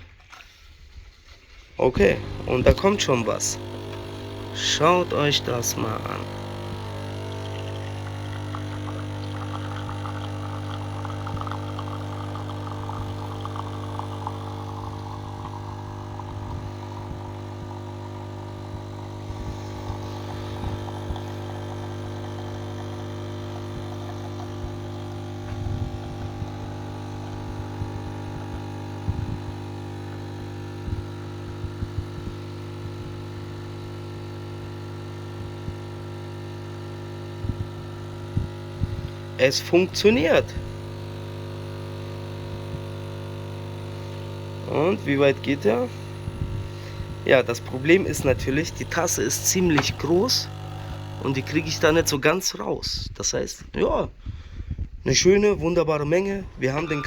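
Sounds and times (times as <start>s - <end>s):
coffee machine pump humming: 1.8s - 52.5s
coffee spattering into a cup: 47.6s - 51.9s.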